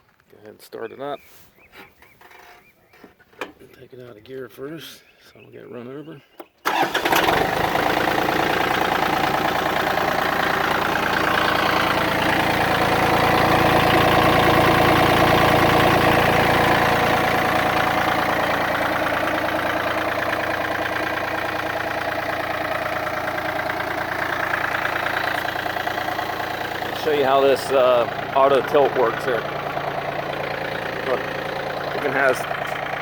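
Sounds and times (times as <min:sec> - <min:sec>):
diesel engine idling: 0:06.7 - 0:33.0.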